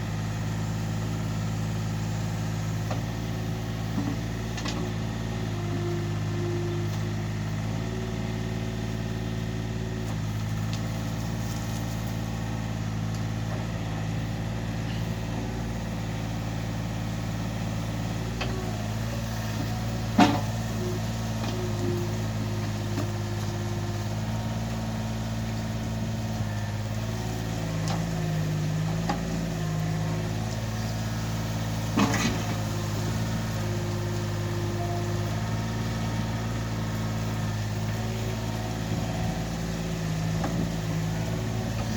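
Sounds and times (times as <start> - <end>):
excavator diesel engine running: 0.0 - 41.9.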